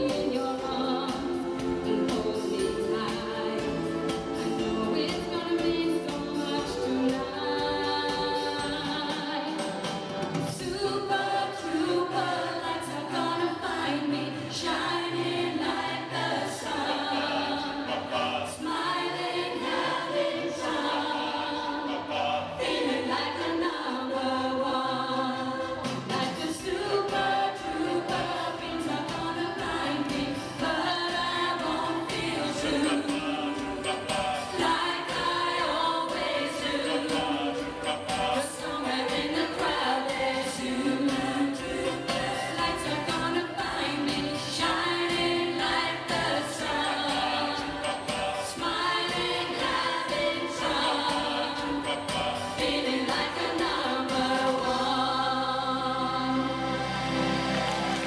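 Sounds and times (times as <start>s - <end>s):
instrumental accompaniment with beat: 0.0s - 16.4s, 25.6s - 55.0s
choir singing pop song: 0.0s - 58.0s.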